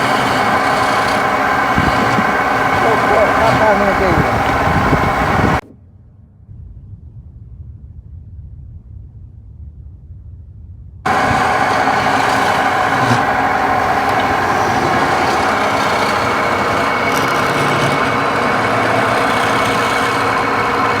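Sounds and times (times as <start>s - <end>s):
wood lathe humming: 0.0s - 5.6s, 11.1s - 21.0s.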